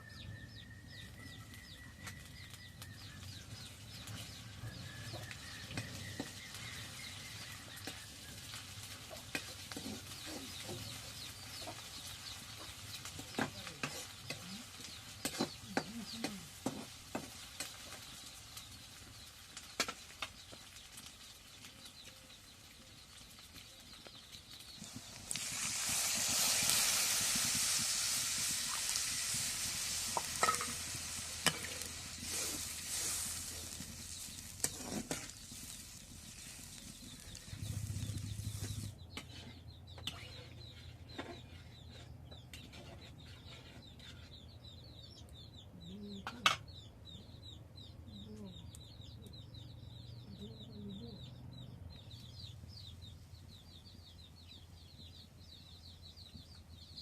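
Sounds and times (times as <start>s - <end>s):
food sizzling in hot oil: 2.0s - 39.0s.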